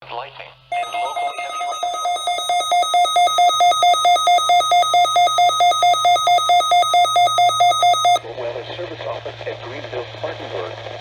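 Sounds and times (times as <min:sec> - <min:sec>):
radio alert alarm beeping: 0:00.7 - 0:08.2.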